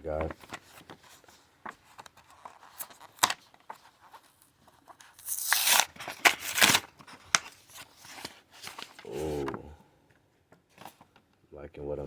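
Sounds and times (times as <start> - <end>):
wrapper crinkling: 0.1 - 9.5
wrapper ripping: 5.0 - 7.8.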